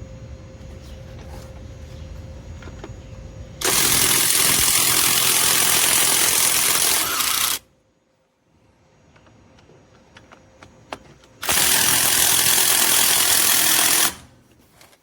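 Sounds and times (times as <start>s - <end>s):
impact wrench running: 3.6s - 7.6s, 11.4s - 14.3s.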